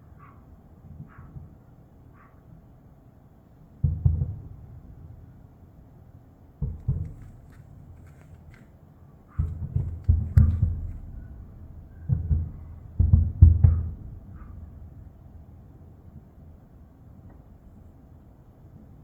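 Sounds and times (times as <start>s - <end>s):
firework shells booming: 6.6s - 8.6s, 9.4s - 15.1s.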